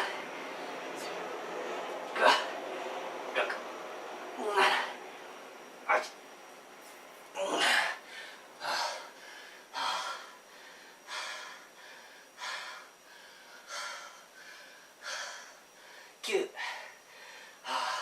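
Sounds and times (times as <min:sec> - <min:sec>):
man breathing hard: 0:04.4 - 0:05.0, 0:07.4 - 0:18.0.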